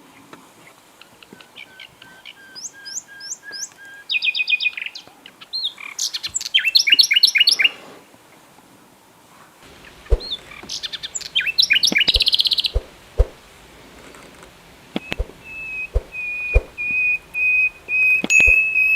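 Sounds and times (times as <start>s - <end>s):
songbirds chirping and trilling: 0.0s - 8.4s, 9.6s - 18.9s
sharp knocks: 12.0s - 13.4s, 15.0s - 16.8s, 18.2s - 18.8s
bird whistle note: 15.0s - 18.9s.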